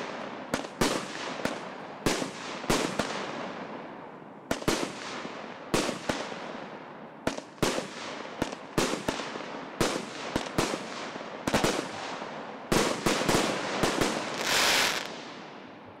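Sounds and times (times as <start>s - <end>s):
fireworks bangs: 7.3s - 15.5s
fireworks hissing: 14.2s - 15.1s.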